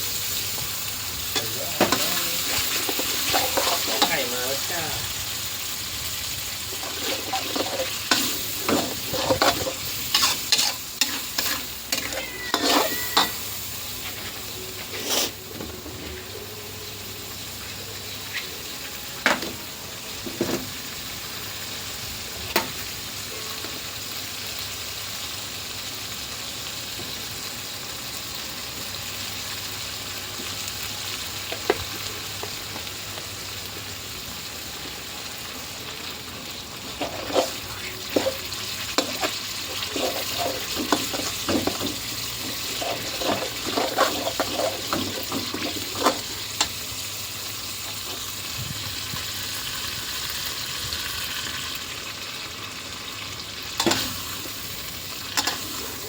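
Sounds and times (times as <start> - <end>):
food sizzling in a pan: 0.0 - 56.0
spatula scraping and knocking pan: 6.8 - 13.4, 37.0 - 46.7.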